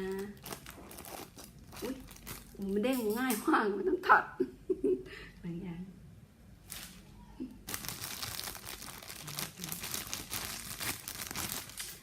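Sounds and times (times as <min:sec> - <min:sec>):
plastic bag crinkling: 0:00.0 - 0:03.4, 0:06.6 - 0:12.0.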